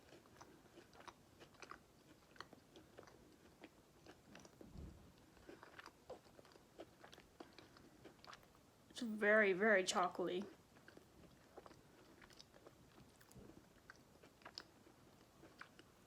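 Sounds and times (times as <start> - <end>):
close-up chewing: 0.0 - 9.0, 9.8 - 16.0
soft low thump: 4.6 - 5.1.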